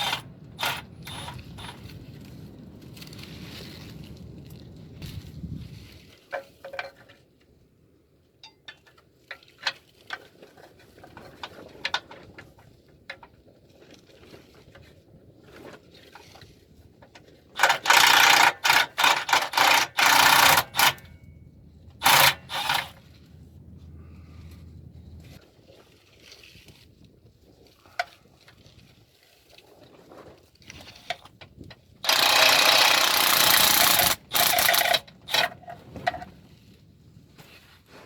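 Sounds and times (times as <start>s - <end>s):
power ratchet spinning bolts: 0.0s - 1.8s, 17.6s - 21.1s, 22.0s - 23.0s, 32.0s - 35.5s.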